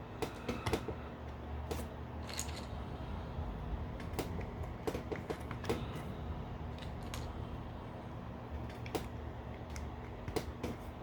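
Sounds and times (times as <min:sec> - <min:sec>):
steady low hum: 0:00.0 - 0:11.0
plastic toy parts clicking: 0:01.7 - 0:02.7.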